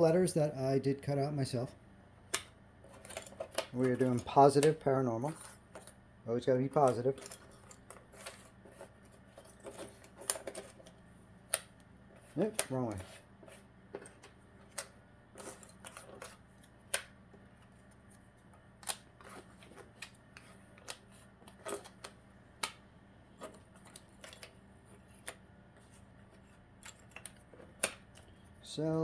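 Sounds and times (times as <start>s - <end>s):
faint steady hum: 0.0s - 29.0s.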